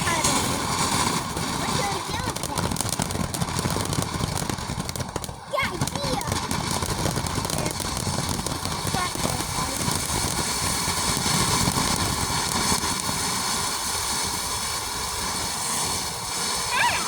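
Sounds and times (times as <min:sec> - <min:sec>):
firework fountain hissing: 0:00.0 - 0:17.0.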